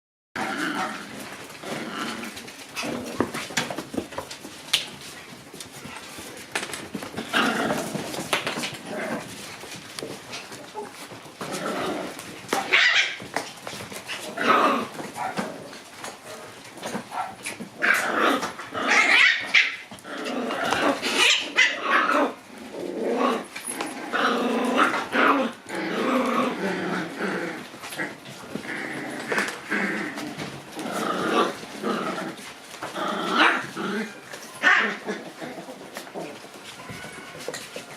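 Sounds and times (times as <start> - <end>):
puppies growling and yapping: 0.4 - 37.9.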